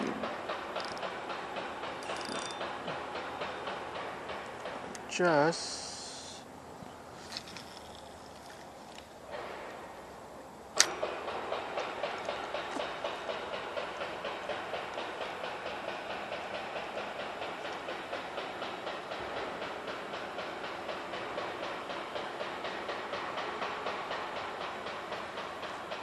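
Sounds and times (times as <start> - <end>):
fishing reel clicking: 0.8 - 1.0.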